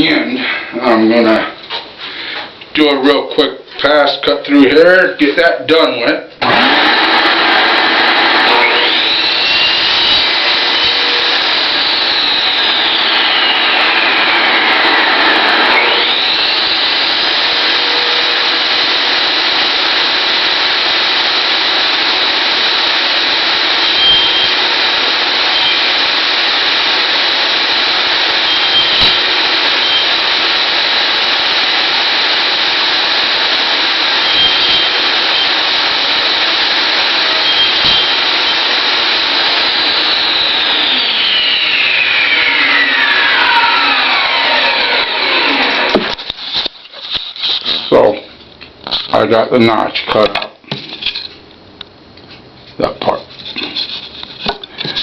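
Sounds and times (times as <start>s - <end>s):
table saw cutting wood: 6.4s - 48.0s.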